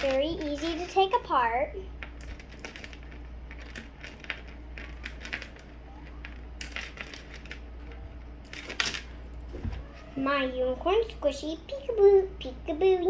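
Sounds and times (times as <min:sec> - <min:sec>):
plastic chain clicks and crackles: 0:00.0 - 0:01.1, 0:02.0 - 0:09.1.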